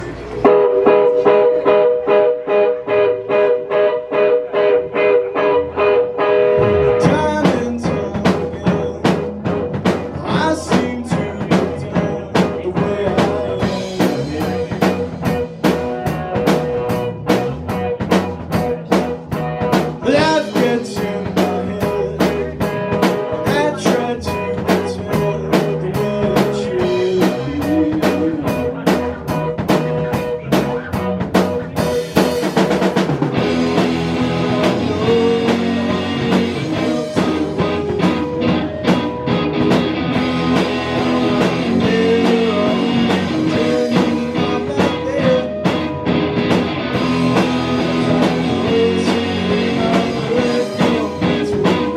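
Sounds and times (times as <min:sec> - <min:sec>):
full band playing: 0:00.0 - 0:51.9
guitar picking a repeating figure: 0:00.4 - 0:51.9
drums and bass: 0:05.2 - 0:51.9.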